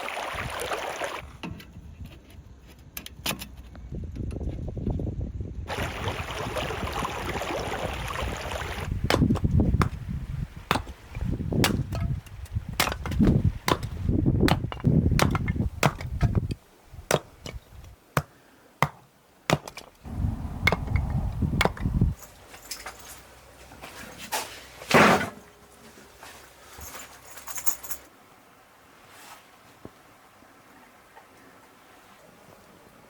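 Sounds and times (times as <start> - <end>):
sharp knocks and dull thuds: 9.0 - 10.1, 10.7 - 20.0, 20.6 - 22.2.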